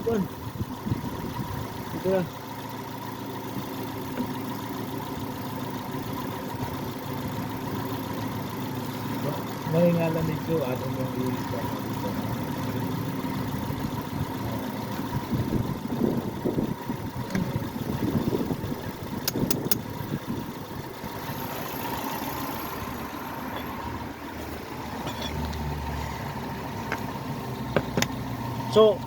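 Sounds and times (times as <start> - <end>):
car engine idling: 0.0 - 29.0
sharp clicks: 19.2 - 19.9.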